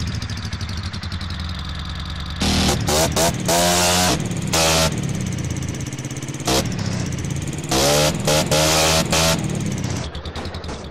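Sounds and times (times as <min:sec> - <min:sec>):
scooter engine idling: 0:00.0 - 0:03.6, 0:04.2 - 0:08.3, 0:09.0 - 0:10.9
scooter throttle blips: 0:02.4 - 0:10.8.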